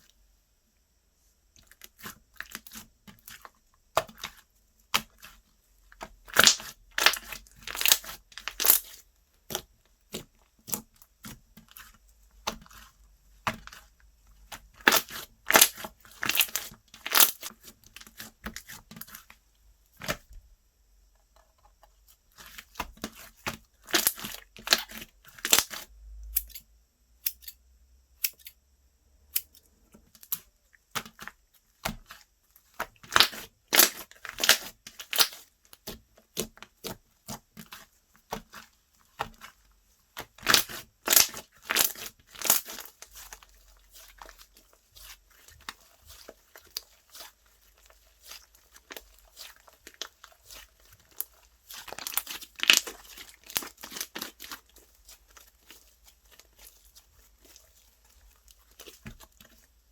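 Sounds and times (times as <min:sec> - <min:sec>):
slime sticky crackles and pops: 0:06.3 - 0:10.8, 0:14.5 - 0:19.1, 0:23.9 - 0:25.8, 0:32.8 - 0:38.6, 0:40.2 - 0:47.4, 0:48.0 - 0:59.6.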